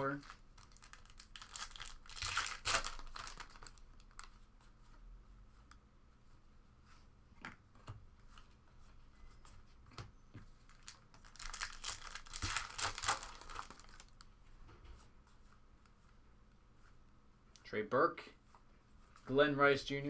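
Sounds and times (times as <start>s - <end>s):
card pack wrapper crinkling and ripping: 0.0s - 4.3s, 10.7s - 14.2s.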